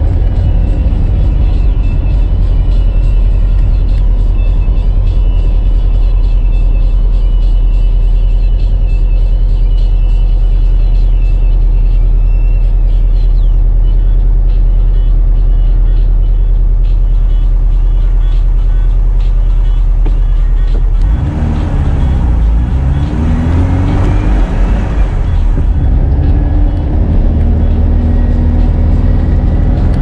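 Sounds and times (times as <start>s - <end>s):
deep car engine running: 0.0s - 30.0s.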